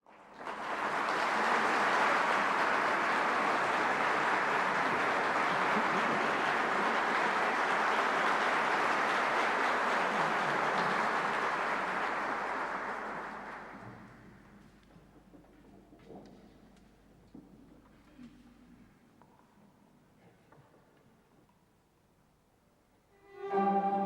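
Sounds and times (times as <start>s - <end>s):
audience applauding: 0.1s - 14.3s.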